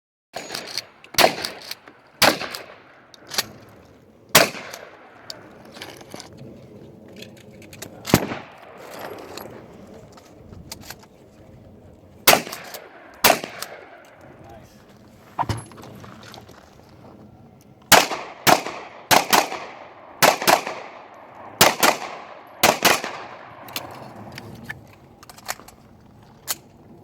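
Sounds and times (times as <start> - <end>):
gunshots with echo: 0.4 - 2.9, 4.4 - 5.2, 8.1 - 9.3, 12.3 - 14.1, 17.9 - 23.7.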